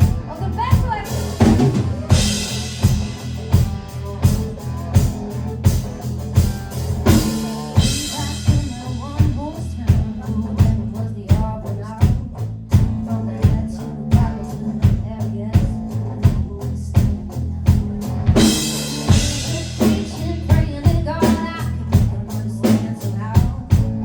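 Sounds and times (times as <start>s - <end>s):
live band playing: 0.0s - 24.0s
steady drum beat: 0.0s - 24.0s.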